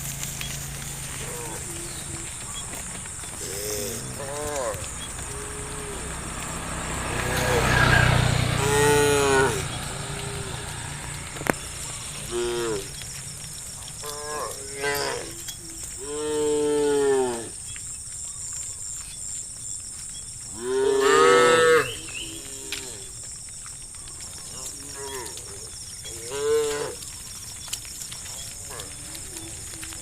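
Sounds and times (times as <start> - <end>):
cattle mooing: 0.8 - 2.4, 3.3 - 11.1, 12.2 - 13.0, 14.0 - 17.6, 20.6 - 23.1, 24.7 - 27.0.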